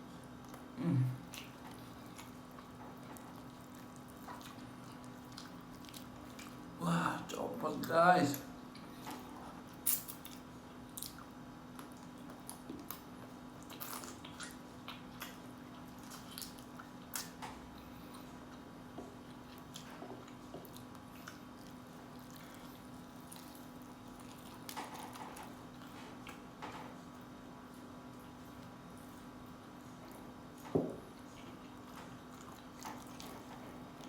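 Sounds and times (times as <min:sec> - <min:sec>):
person chewing: 0:00.2 - 0:06.8, 0:08.7 - 0:26.4.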